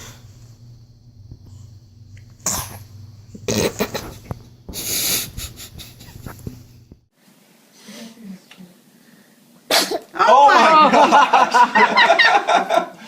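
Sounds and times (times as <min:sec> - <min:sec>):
person sneezing: 0:09.7 - 0:10.1.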